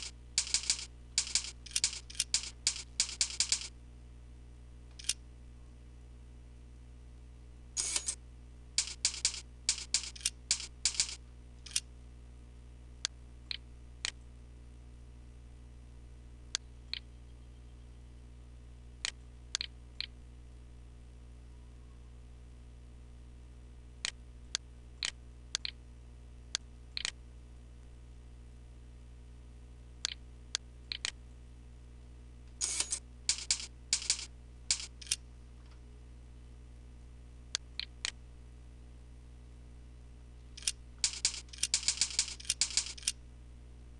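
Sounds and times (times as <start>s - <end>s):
computer keyboard typing: 0.0s - 3.7s, 8.8s - 11.8s, 32.6s - 35.2s, 40.6s - 43.2s
steady low hum: 0.0s - 43.9s
mouse clicks: 16.9s - 17.1s, 19.0s - 20.1s, 25.0s - 25.8s, 27.0s - 27.2s, 30.9s - 31.2s.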